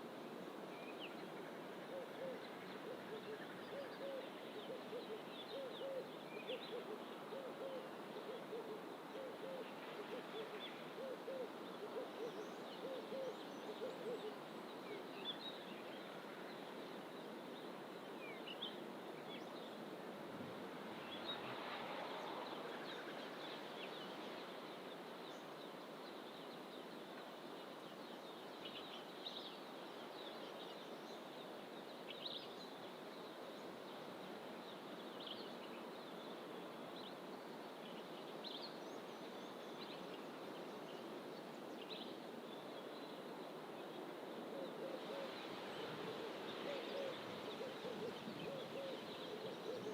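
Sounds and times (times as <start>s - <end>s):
low hooting bird call: 44.5s - 49.9s.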